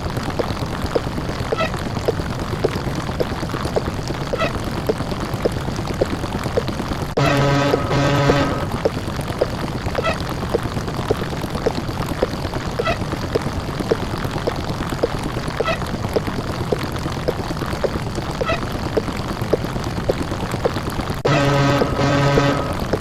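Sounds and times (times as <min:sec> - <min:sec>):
higher blip: 0:07.2 - 0:08.9, 0:21.3 - 0:23.0.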